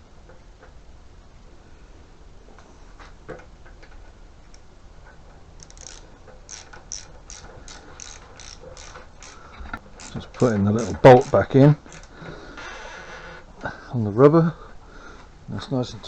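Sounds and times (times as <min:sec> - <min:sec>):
ratchet spanner clicking: 0:05.6 - 0:12.1.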